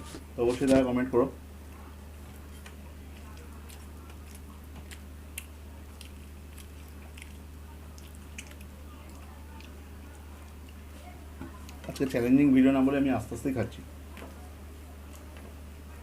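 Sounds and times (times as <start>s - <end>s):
steady low hum: 0.0s - 16.0s
person chewing: 2.3s - 12.1s
wet eating clicks: 2.6s - 10.9s.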